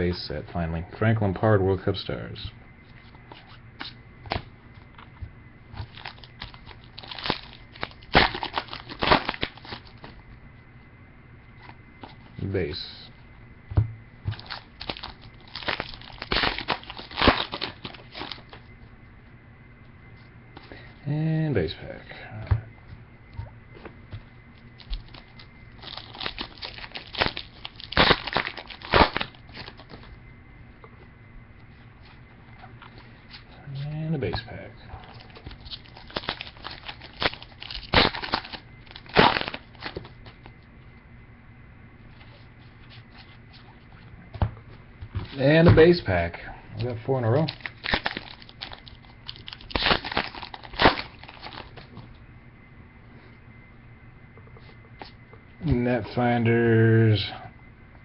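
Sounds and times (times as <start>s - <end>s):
wrapper crinkling and crackling: 5.8s - 10.1s, 14.3s - 18.6s, 24.8s - 30.0s, 35.0s - 40.5s, 47.4s - 51.8s.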